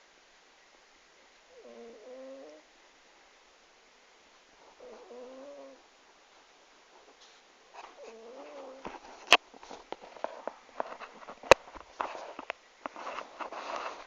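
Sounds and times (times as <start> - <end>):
cat snoring: 1.5 - 2.7, 4.6 - 5.8, 8.0 - 8.8.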